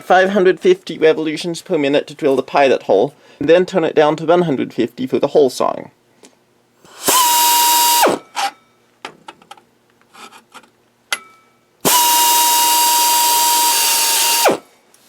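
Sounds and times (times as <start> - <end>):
drill whining into metal: 6.9 - 8.6, 11.8 - 14.6.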